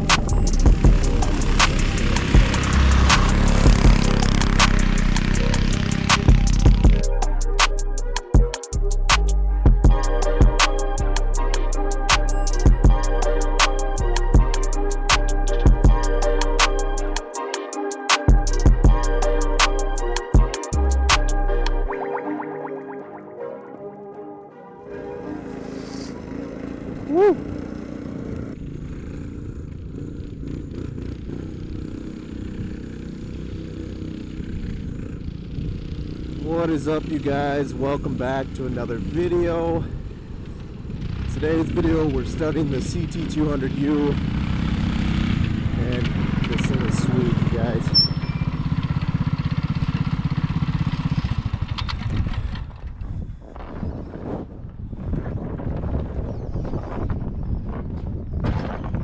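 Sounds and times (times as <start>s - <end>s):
wind on microphone: 0.0s - 5.0s, 51.2s - 59.0s
small engine running: 0.0s - 8.8s, 25.0s - 52.9s.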